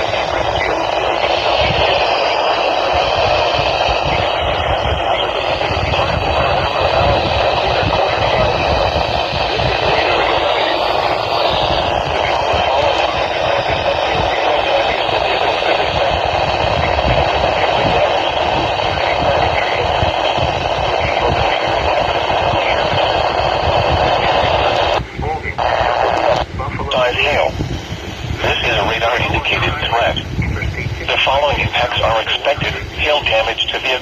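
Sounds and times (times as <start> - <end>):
faint voice on radio: 0.0 - 34.0
loud radio static: 0.0 - 34.0.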